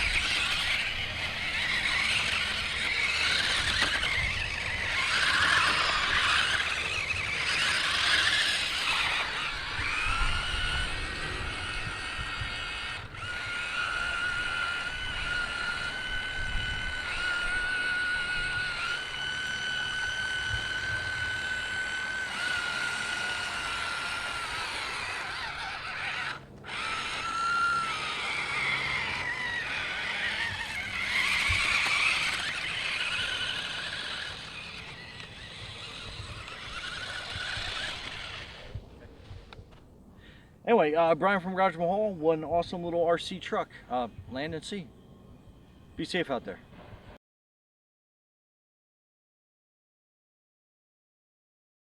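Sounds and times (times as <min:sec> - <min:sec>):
electric motor whine: 0:00.0 - 0:39.9.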